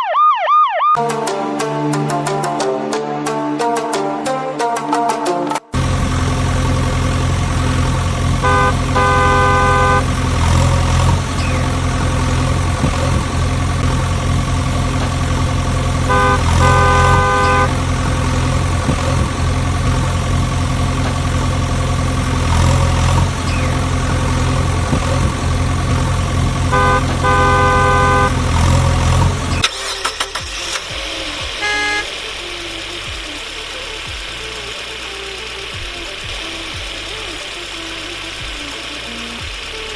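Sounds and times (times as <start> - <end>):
vehicle engine rumbling: 5.7 - 39.9
vehicle horn honking: 8.3 - 11.2, 16.0 - 19.4, 23.7 - 30.8, 31.4 - 32.5.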